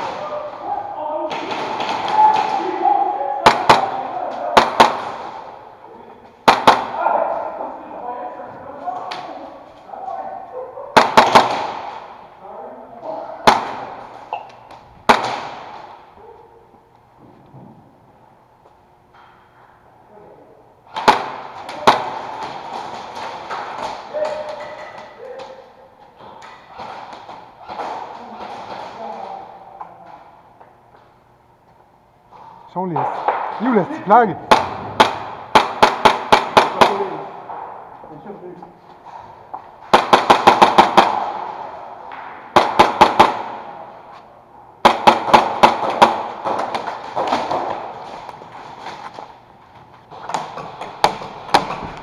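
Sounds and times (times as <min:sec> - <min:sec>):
airsoft gun shots: 0:01.3 - 0:02.8, 0:03.4 - 0:05.6, 0:06.4 - 0:07.1, 0:11.0 - 0:12.2, 0:13.4 - 0:14.2, 0:15.0 - 0:16.0, 0:20.9 - 0:24.7, 0:33.0 - 0:37.8, 0:39.8 - 0:44.0, 0:44.8 - 0:48.0.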